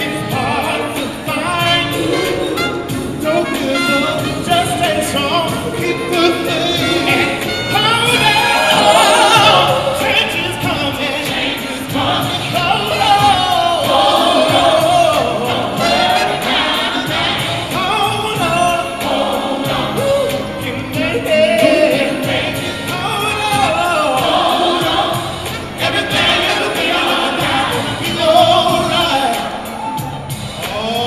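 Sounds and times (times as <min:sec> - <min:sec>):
gospel choir singing: 0:00.0 - 0:31.0
instrumental backing: 0:00.0 - 0:31.0.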